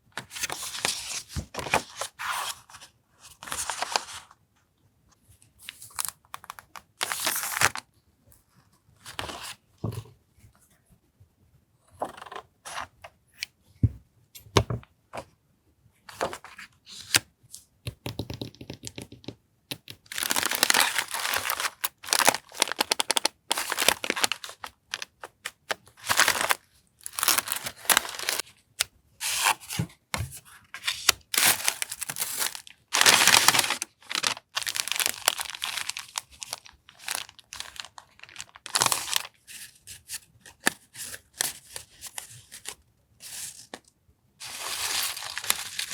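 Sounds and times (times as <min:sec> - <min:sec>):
packaging rustling and crinkling: 0:05.7 - 0:07.8, 0:20.1 - 0:28.6, 0:29.2 - 0:39.8, 0:44.4 - 0:45.9.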